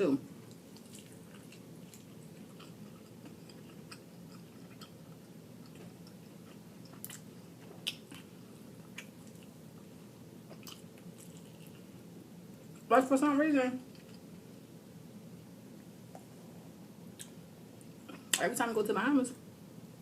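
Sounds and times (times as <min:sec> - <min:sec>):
steady low hum: 0:00.0 - 0:20.0
person chewing: 0:00.4 - 0:09.9, 0:10.5 - 0:12.0.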